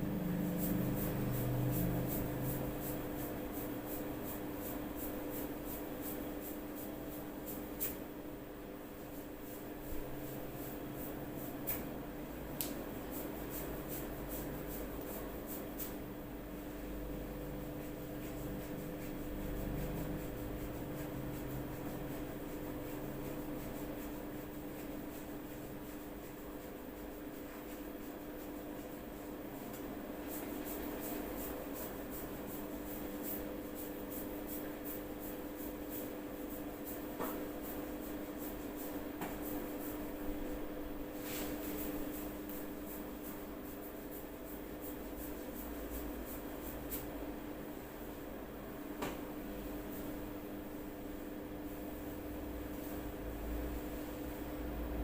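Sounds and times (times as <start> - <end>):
steady hum: 0.0 - 55.0
hands rubbing skin: 1.8 - 8.0, 23.4 - 40.2, 41.2 - 47.2.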